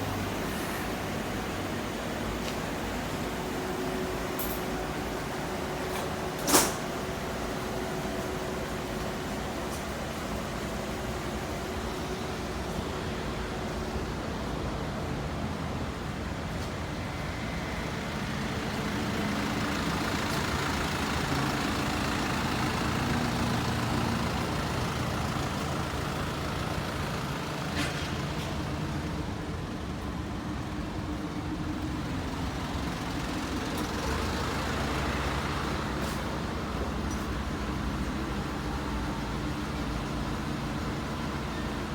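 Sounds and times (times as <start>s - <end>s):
truck engine running: 0.0s - 41.9s.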